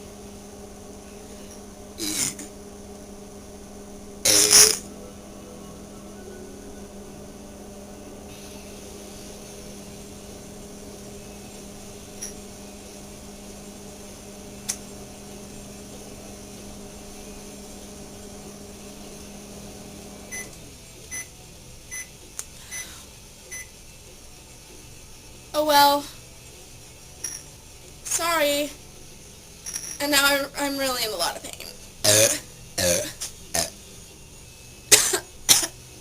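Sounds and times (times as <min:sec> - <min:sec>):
microwave beeping: 0:00.0 - 0:22.9, 0:23.5 - 0:23.8
microwave oven humming: 0:00.0 - 0:36.0.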